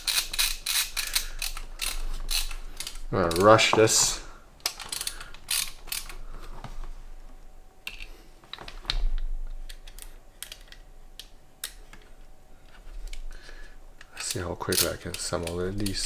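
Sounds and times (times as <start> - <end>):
plastic and metal parts clicking: 0.0 - 6.6, 9.6 - 13.3, 14.0 - 16.0.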